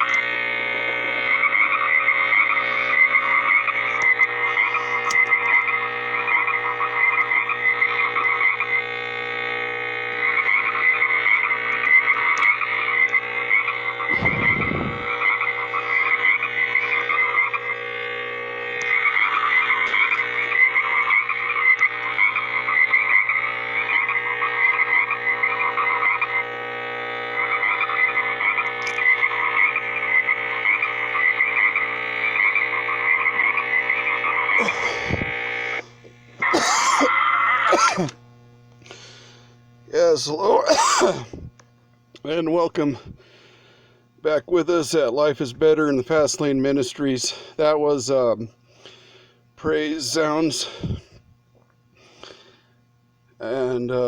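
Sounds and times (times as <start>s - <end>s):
frogs croaking: 0.0s - 38.2s
faint steady hum: 0.0s - 54.0s.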